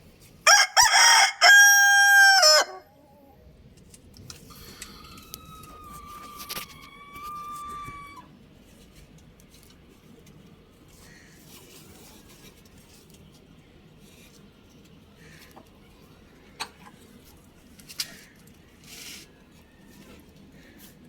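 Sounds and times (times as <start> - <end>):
rooster crowing: 0.4 - 2.9, 5.0 - 8.3.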